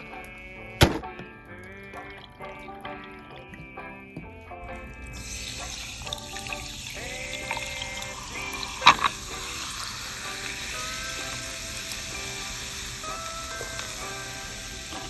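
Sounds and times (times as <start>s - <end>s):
background music: 0.0s - 15.0s
food sizzling over a fire: 5.0s - 15.0s.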